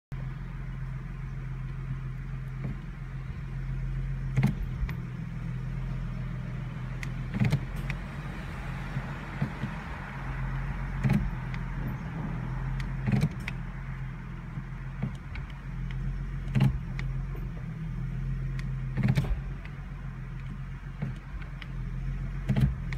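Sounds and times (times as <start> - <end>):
car engine idling: 0.1 - 22.9
transmission clunking: 0.2 - 22.9.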